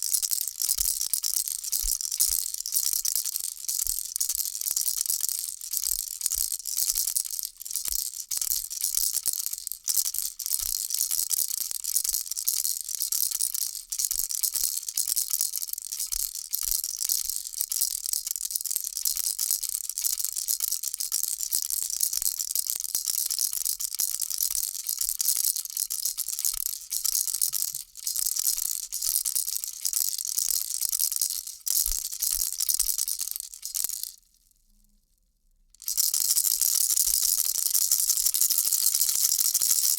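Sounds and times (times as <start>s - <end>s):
baby rattle shaking: 0.0s - 34.2s, 35.8s - 39.9s.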